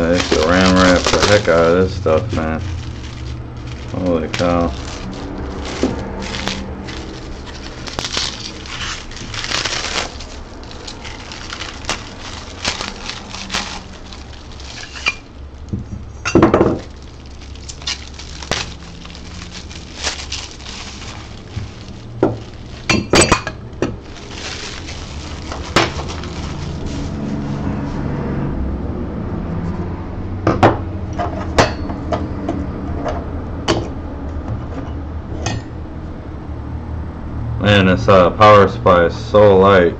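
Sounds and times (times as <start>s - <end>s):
packing material rustling: 0.0s - 27.6s
parts clinking and knocking: 14.7s - 17.0s, 22.2s - 24.0s.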